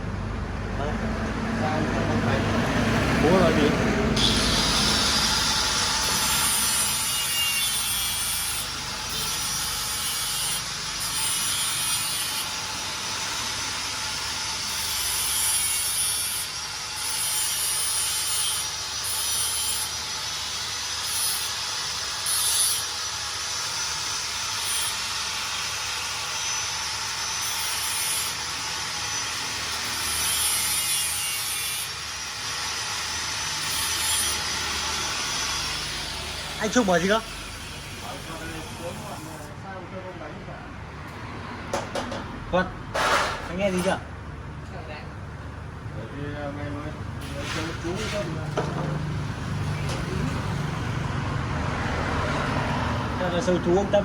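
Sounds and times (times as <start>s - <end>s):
power tool rasping: 4.2s - 39.5s, 47.2s - 48.5s.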